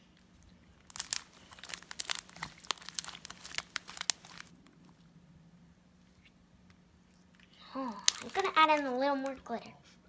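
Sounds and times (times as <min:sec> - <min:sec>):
slime squished by hand crackling: 0:00.4 - 0:05.0, 0:07.9 - 0:09.4.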